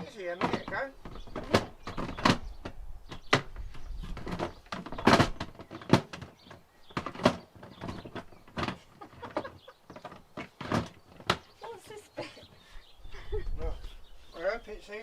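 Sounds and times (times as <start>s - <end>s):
hard plastic parts knocking: 0.2s - 11.5s.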